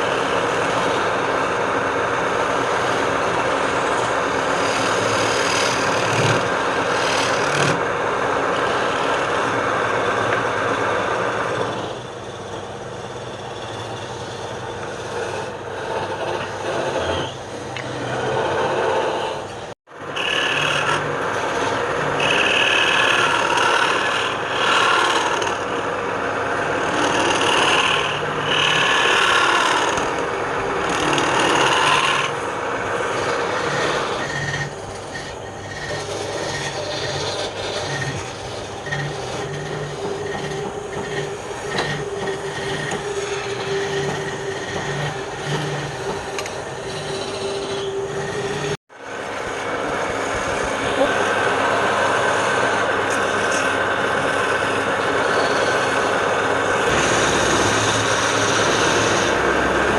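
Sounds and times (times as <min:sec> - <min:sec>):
faint machine hum: 0:00.0 - 0:59.9
abrasive rubbing on wood: 0:27.2 - 0:48.8.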